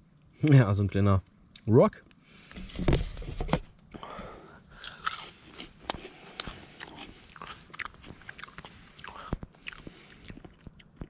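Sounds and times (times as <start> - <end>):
person crunching dried apple: 4.8 - 11.0.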